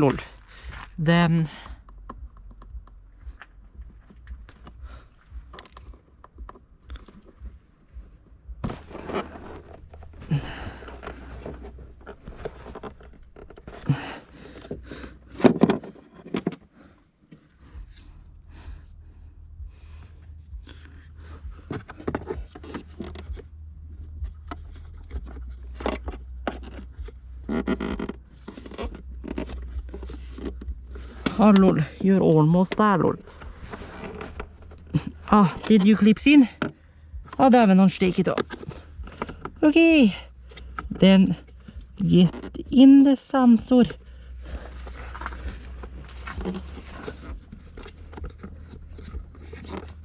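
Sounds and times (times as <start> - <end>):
breathy sounds of effort: 0.0 - 37.4, 38.1 - 42.7, 43.9 - 50.0
steady low hum: 0.0 - 50.0
plastic trim scraping and clicking: 44.6 - 50.0.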